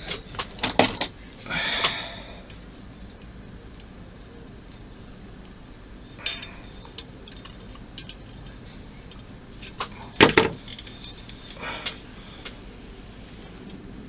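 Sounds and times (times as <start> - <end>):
plastic parts clicking into place: 6.2 - 12.6.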